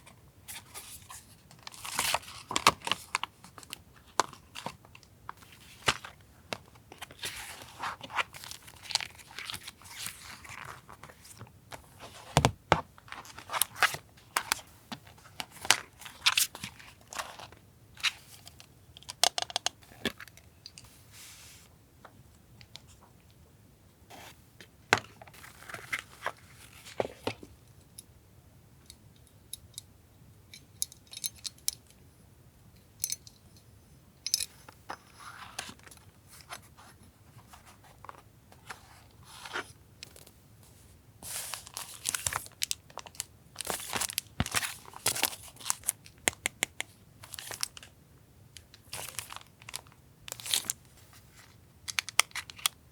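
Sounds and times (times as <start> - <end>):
packaging crinkling and rustling: 41.3 - 46.4, 47.2 - 47.9, 48.6 - 52.8.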